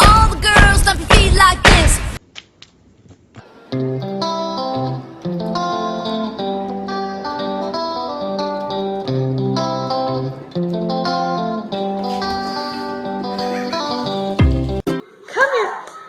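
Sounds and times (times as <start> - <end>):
plucked guitar melody: 3.7 - 15.0.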